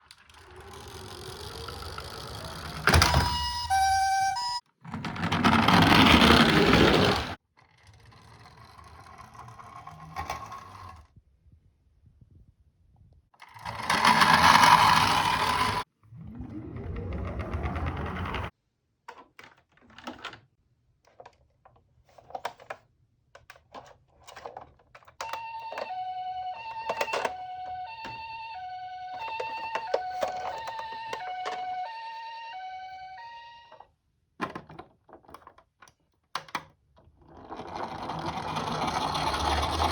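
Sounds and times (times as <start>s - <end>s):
toy car wheels rushing: 0.0s - 3.1s, 5.0s - 11.1s, 13.4s - 18.5s, 37.2s - 39.9s
two-tone electronic siren: 2.4s - 4.6s, 25.2s - 33.9s.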